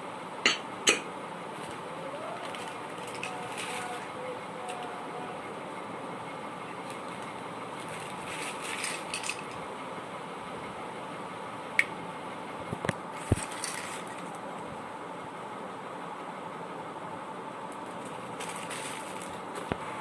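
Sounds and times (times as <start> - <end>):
background hum: 0.0 - 20.0
objects clicking and knocking: 2.4 - 4.0, 8.0 - 9.6.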